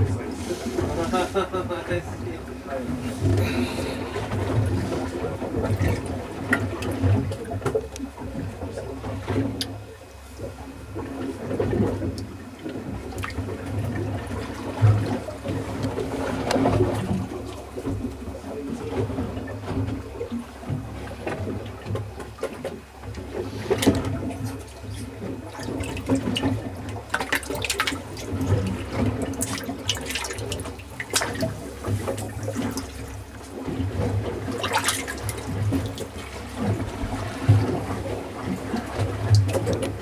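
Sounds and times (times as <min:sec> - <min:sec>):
boat engine hum: 0:00.0 - 0:40.0
water splashing and rushing: 0:00.0 - 0:40.0.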